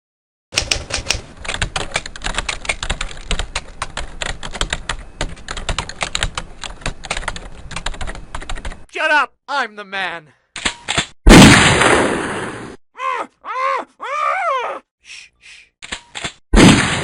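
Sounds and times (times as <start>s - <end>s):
fast typing on keyboard: 0.6s - 8.8s.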